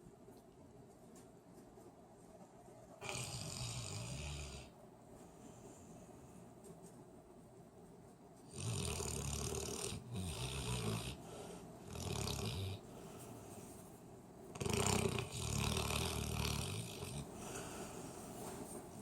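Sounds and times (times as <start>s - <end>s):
dog snoring: 3.0s - 4.7s, 8.5s - 13.1s, 14.5s - 18.0s.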